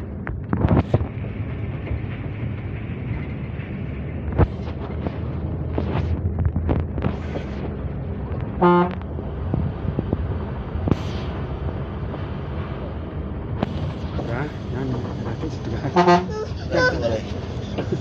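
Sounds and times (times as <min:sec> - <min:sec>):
bus engine running: 0:00.0 - 0:18.0
bus horn toot: 0:08.6 - 0:09.0, 0:15.8 - 0:17.1.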